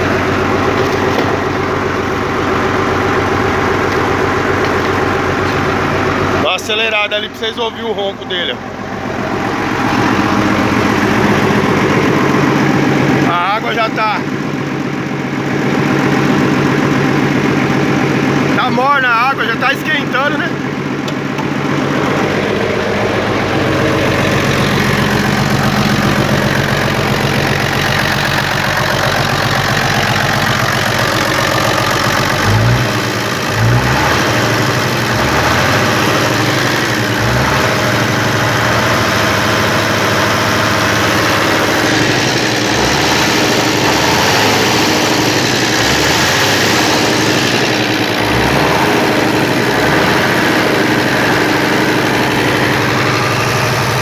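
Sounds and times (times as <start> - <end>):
diesel truck engine idling: 0.0 - 54.0.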